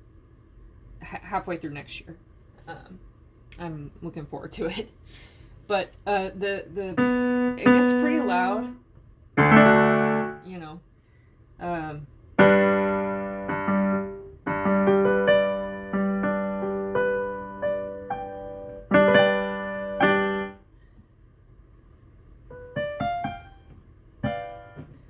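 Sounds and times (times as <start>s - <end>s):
piano chords ringing: 6.8s - 8.8s, 9.4s - 10.5s, 12.4s - 20.6s, 22.5s - 25.0s
soft piano notes: 6.8s - 8.8s, 9.4s - 10.6s, 12.4s - 20.6s, 22.5s - 25.0s.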